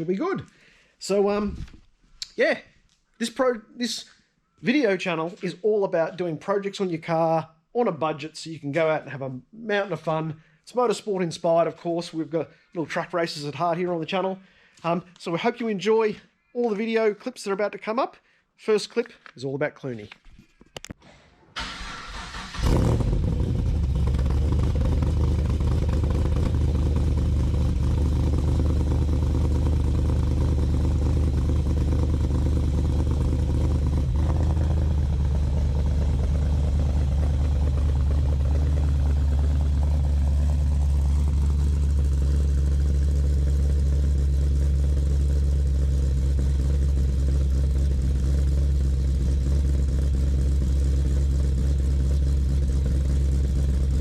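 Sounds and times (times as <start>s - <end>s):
car engine starting and idling: 21.6s - 54.0s.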